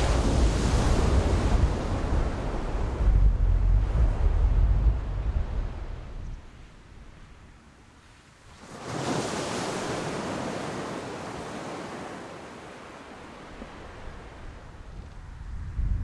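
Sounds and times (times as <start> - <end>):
sea wave crashing on shore: 8.6 - 14.2.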